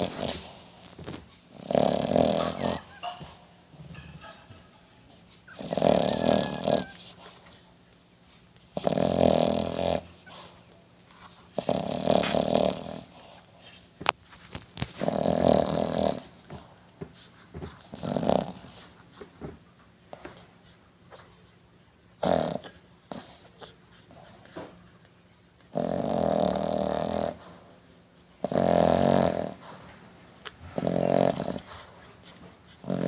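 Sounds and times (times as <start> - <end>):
dog snoring: 0.0 - 4.0, 5.5 - 7.5, 8.6 - 10.6, 11.5 - 13.8, 15.0 - 19.0, 22.2 - 24.6, 25.7 - 27.8, 28.4 - 29.8, 30.4 - 31.9, 32.7 - 33.0.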